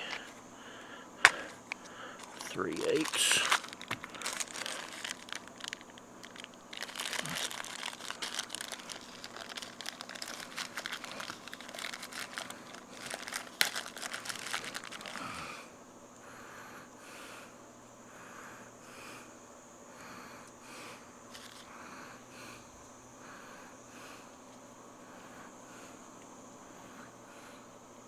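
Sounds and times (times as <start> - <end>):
plastic parts rustling and clicking: 0.0 - 0.4, 1.2 - 15.3, 21.3 - 21.6.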